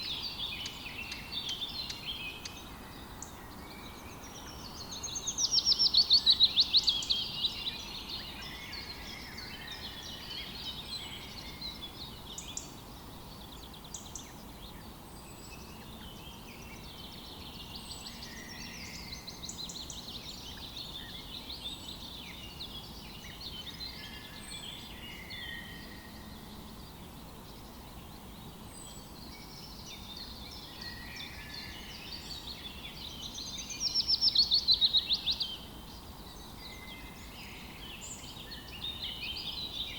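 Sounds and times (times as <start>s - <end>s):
songbirds singing and chirping: 0.0s - 39.9s.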